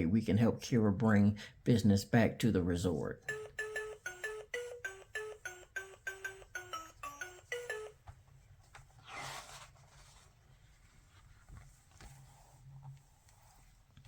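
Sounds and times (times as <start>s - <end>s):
electronic bell-like tune: 3.2s - 8.0s.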